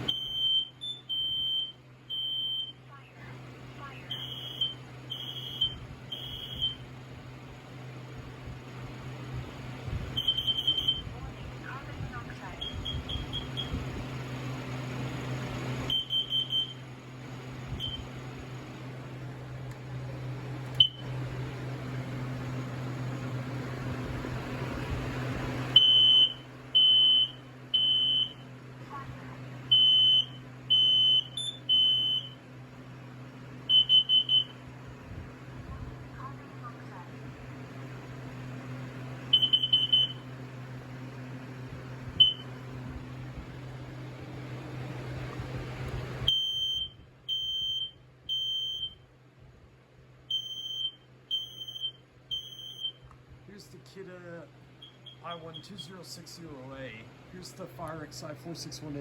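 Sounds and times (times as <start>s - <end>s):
smoke alarm beeping: 0.0s - 2.9s, 4.0s - 6.9s, 10.1s - 11.2s, 12.4s - 13.9s, 15.2s - 16.9s, 17.7s - 18.3s, 20.7s - 21.1s, 25.7s - 28.5s, 29.7s - 32.5s, 33.6s - 34.7s, 39.2s - 40.4s, 42.2s - 42.6s, 46.3s - 49.0s, 50.3s - 53.0s, 54.8s - 55.9s.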